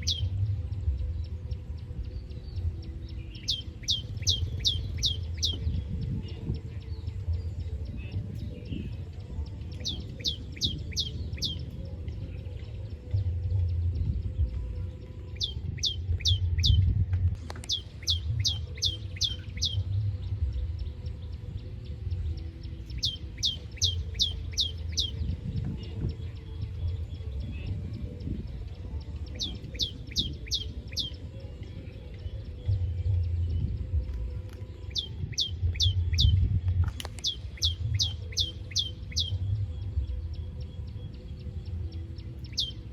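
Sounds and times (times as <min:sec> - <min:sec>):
low rumble: 0:00.0 - 0:30.4
birds chirping: 0:00.0 - 0:42.9.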